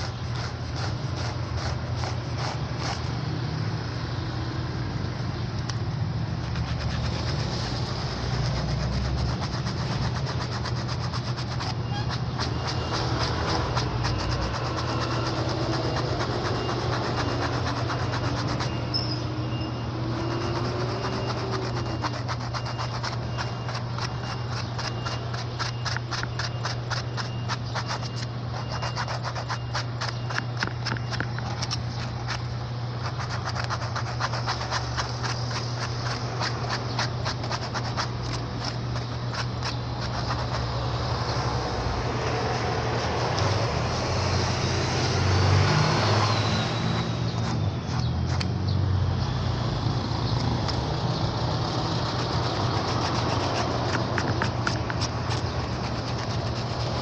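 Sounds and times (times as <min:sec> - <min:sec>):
shoe repair machine running: 0:00.0 - 0:03.7, 0:05.6 - 0:41.2, 0:50.4 - 0:57.0
fast even clatter: 0:20.1 - 0:40.9, 0:51.7 - 0:57.0.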